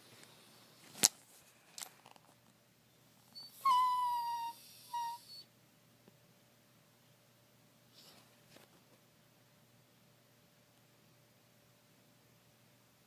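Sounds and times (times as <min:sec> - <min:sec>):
dog whining: 0:03.3 - 0:05.5.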